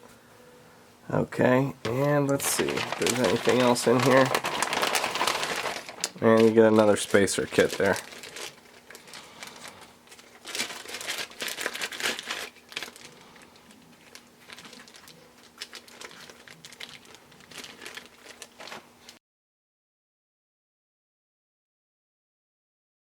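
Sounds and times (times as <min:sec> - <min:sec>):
packaging crinkling and rustling: 0:01.9 - 0:19.2.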